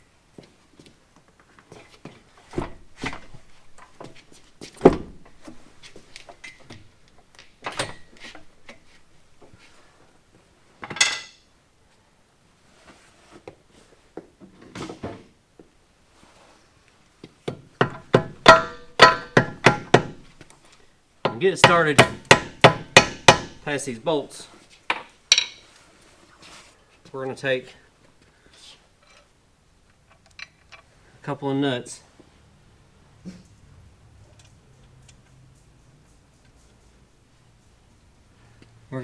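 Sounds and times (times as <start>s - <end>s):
metal tools knocking and clanking: 10.8s - 11.4s, 17.8s - 20.0s, 24.9s - 25.7s.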